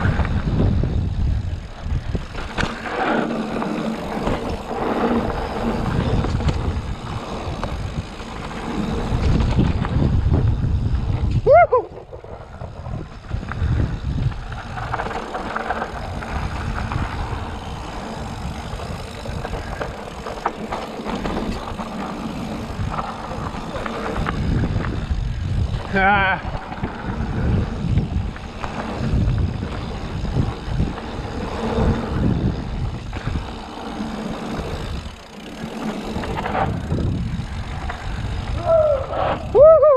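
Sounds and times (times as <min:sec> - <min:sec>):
bike clicks and rattles: 0:00.0 - 0:39.9
bike tyres rumbling on dirt: 0:00.0 - 0:39.9
wind: 0:00.0 - 0:39.9.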